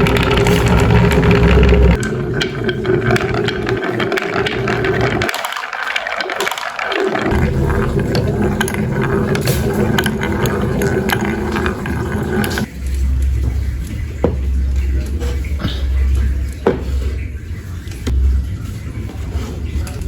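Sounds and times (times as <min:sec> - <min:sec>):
marbles clicking together: 0:00.0 - 0:12.7
marbles rolling on wooden track: 0:00.0 - 0:12.7.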